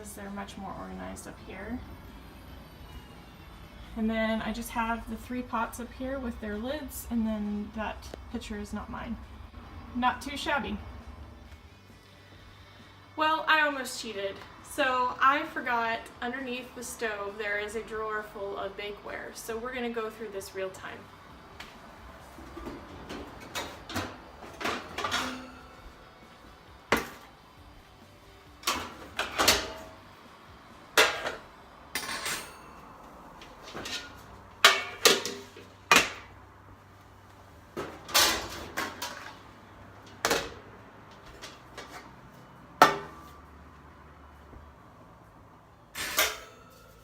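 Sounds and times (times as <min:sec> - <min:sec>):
metal bakeware clanking: 0:23.5 - 0:25.8, 0:31.0 - 0:32.9, 0:33.6 - 0:36.2, 0:46.0 - 0:47.0.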